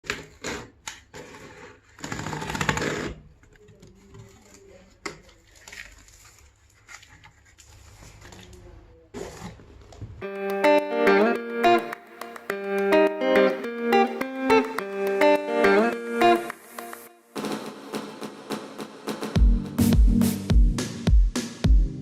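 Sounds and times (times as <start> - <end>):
packaging rustling: 3.5 - 10.0
guitar music: 10.2 - 17.2.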